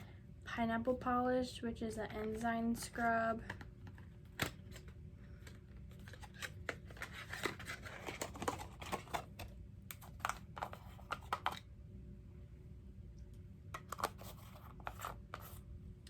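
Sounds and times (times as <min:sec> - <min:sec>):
packaging clicks and taps: 0:02.2 - 0:11.6, 0:13.8 - 0:15.6
packaging crinkling and rustling: 0:03.4 - 0:11.6.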